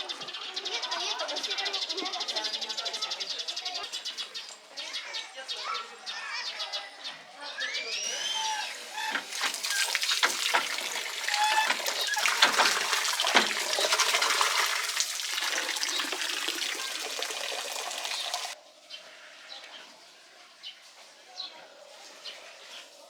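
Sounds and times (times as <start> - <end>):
water rushing and splashing: 8.4 - 18.6.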